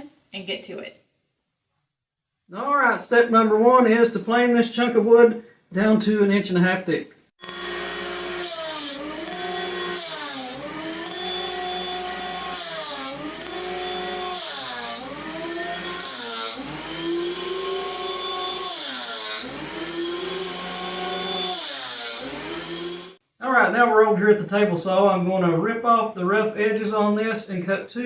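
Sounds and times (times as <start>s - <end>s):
planer motor whine: 7.4s - 23.2s.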